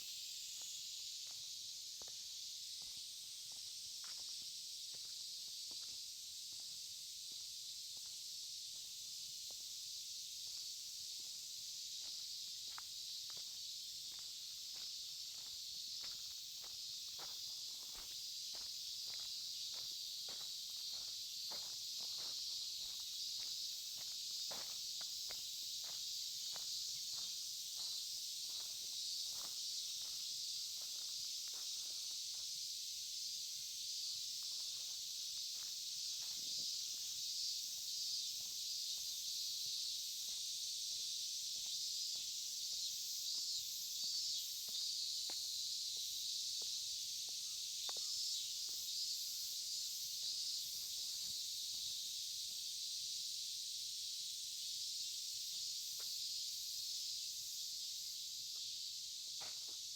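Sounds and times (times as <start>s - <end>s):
insects chirping: 0.0s - 59.9s
footsteps walking: 12.0s - 32.5s, 35.6s - 36.8s.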